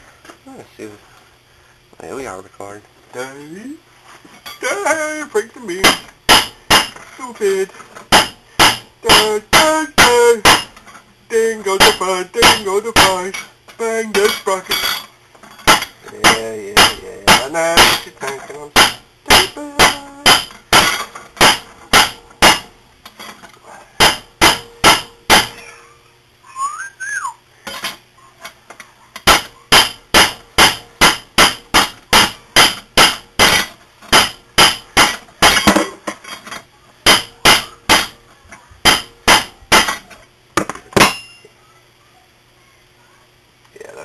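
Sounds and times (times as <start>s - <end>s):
rising and falling whistle: 26.5s - 27.4s.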